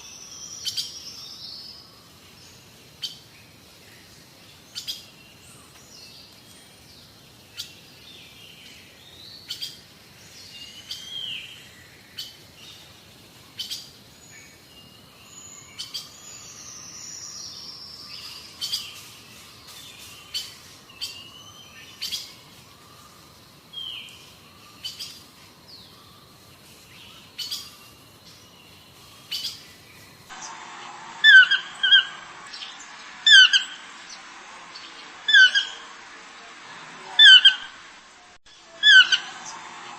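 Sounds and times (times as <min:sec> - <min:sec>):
birds chirping: 0:00.0 - 0:39.9
bird giving sharp calls: 0:31.2 - 0:33.8, 0:35.3 - 0:35.9, 0:37.1 - 0:37.8, 0:38.7 - 0:39.5.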